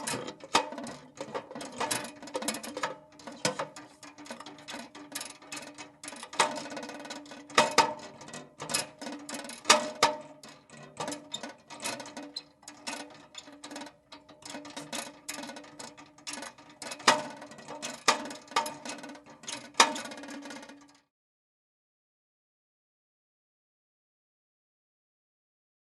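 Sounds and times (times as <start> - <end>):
lantern handle squeaking: 0.0 - 20.9
glass rattling in metal frame: 0.0 - 21.0.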